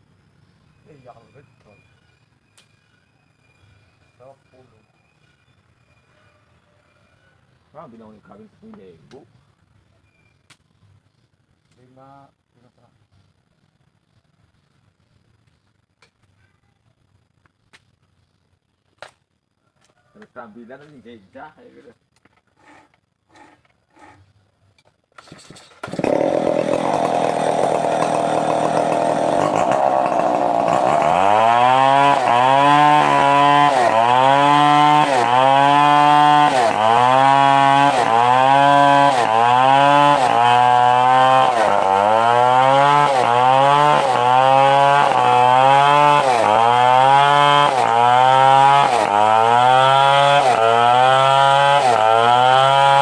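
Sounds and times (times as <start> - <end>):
chainsaw running: 22.4 - 24.2, 25.2 - 53.0.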